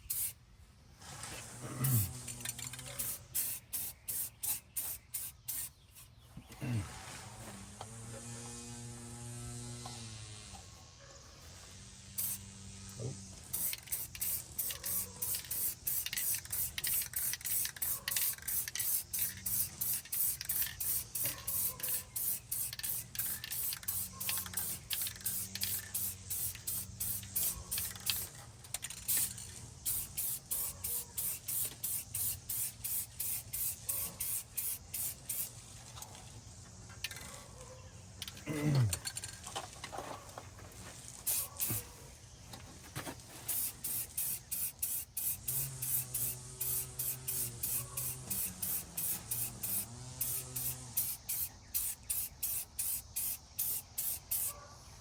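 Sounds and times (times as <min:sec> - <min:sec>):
aerosol spray can bursts: 0:00.0 - 0:00.4, 0:01.2 - 0:06.1, 0:12.2 - 0:12.4, 0:13.5 - 0:35.5, 0:41.2 - 0:41.9, 0:43.5 - 0:54.6.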